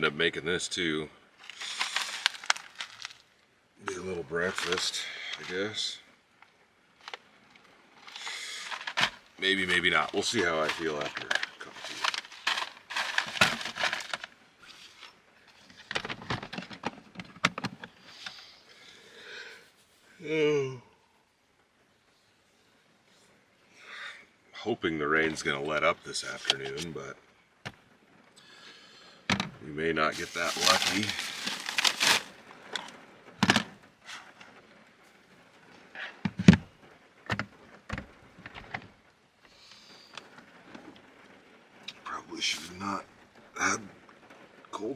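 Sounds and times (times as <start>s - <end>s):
small objects clicking and rattling: 1.4s - 3.3s, 4.4s - 5.6s, 8.0s - 15.1s, 30.1s - 32.9s.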